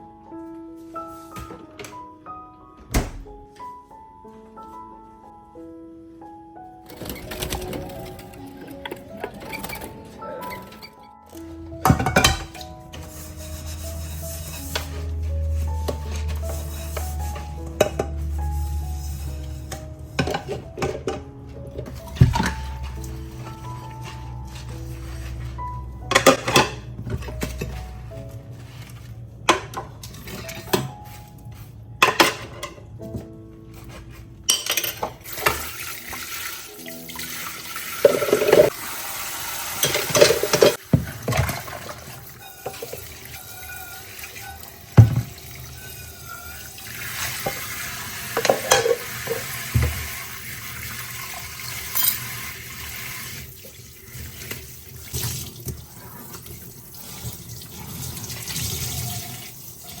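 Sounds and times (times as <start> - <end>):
dishes clinking and clattering: 6.9 - 38.8, 39.8 - 60.0
tap running into sink: 47.3 - 50.3.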